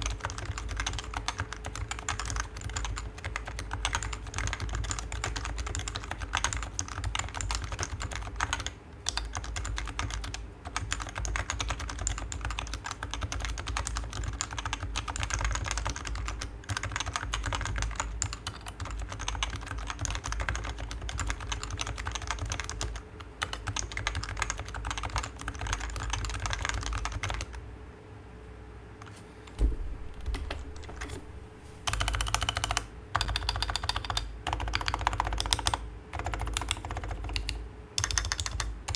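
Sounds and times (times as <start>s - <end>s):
fast keyboard typing: 0.0s - 27.6s, 29.5s - 38.9s
single knock: 29.6s - 30.7s.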